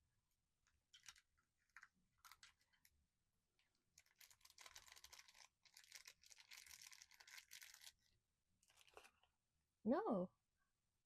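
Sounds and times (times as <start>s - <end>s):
packaging crinkling and tearing: 0.9s - 2.9s, 3.9s - 9.3s.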